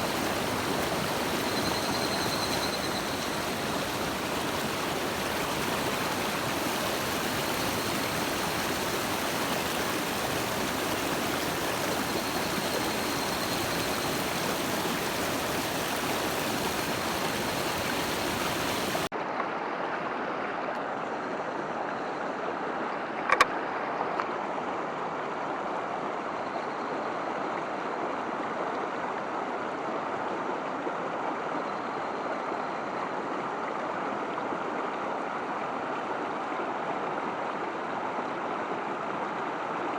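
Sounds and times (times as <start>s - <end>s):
stream water rushing: 0.0s - 26.4s.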